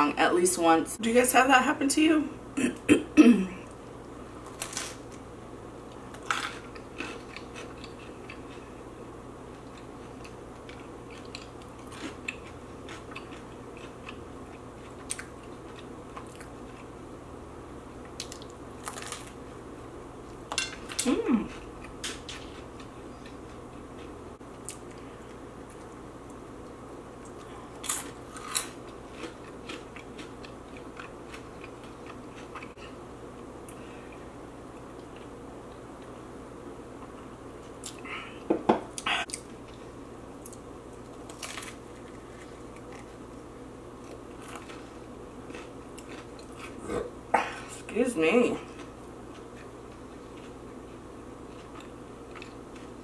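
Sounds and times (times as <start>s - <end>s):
crunching and chewing snacks: 5.9s - 8.7s, 9.6s - 16.9s, 18.1s - 19.4s, 27.3s - 33.0s, 39.2s - 43.2s, 44.0s - 46.9s, 48.6s - 53.0s.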